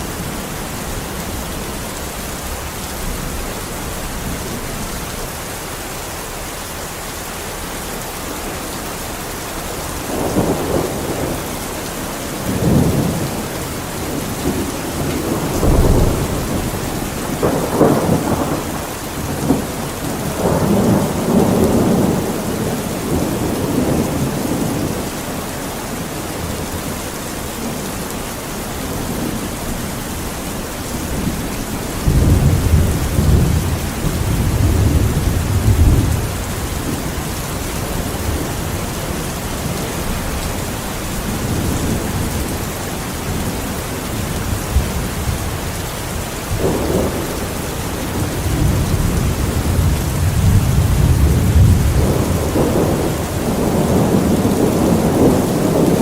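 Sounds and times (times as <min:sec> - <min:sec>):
steady rain falling: 0:00.0 - 0:56.0
thunder rumbling: 0:09.6 - 0:56.0.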